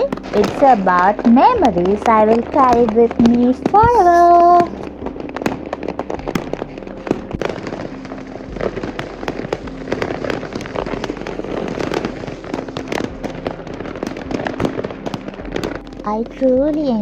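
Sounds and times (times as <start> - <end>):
fireworks and firecrackers banging: 0.0 - 17.0.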